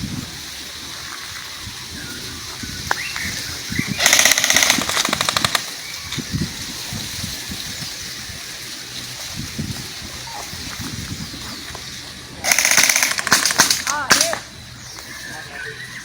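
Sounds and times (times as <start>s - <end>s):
airsoft gun full-auto burst: 3.9s - 5.7s, 12.4s - 14.4s.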